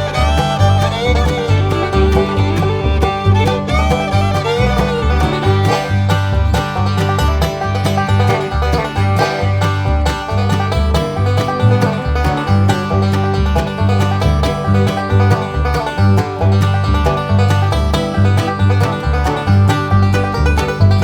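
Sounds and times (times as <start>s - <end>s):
upbeat bluegrass banjo music: 0.0s - 21.0s.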